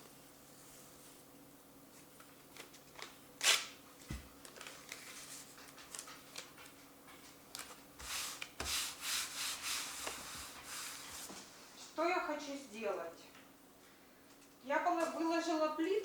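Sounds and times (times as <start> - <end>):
rubbing and scraping: 8.0 - 11.4.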